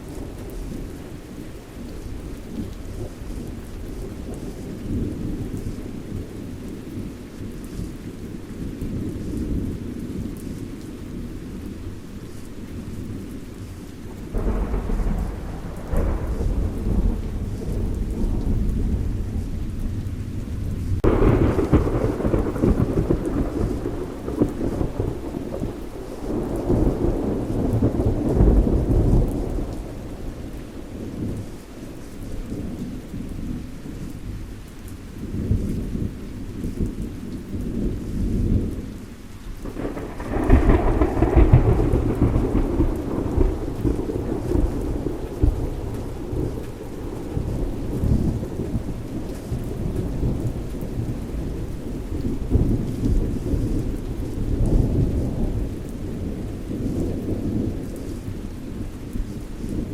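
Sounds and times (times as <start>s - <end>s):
rolling thunder: 0.0s - 34.4s, 35.3s - 59.9s
steady rain: 0.0s - 59.9s
loud thunder clap: 14.3s - 20.0s, 21.0s - 25.7s, 39.6s - 51.2s.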